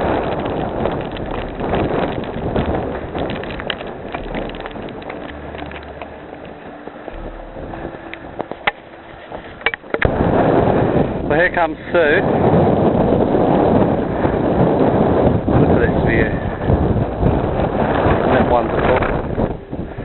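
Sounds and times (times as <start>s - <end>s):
sharp clicks and knocks: 0.0s - 10.1s
wind buffeting microphone: 0.0s - 20.0s.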